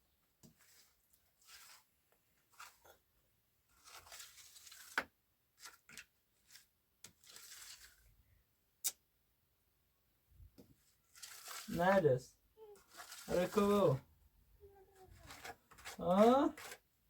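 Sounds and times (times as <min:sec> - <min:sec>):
rustling and tearing: 0:00.6 - 0:03.0, 0:03.7 - 0:08.1, 0:10.9 - 0:11.8, 0:12.7 - 0:14.0, 0:15.0 - 0:16.8.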